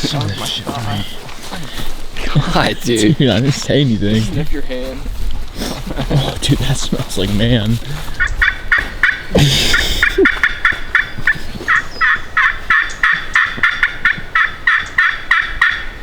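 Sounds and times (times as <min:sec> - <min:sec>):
turkey call yelps: 0:09.8 - 0:16.0.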